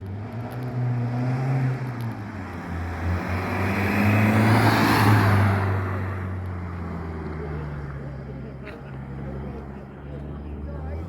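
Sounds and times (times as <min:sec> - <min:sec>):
car engine accelerating past: 0:00.0 - 0:08.3.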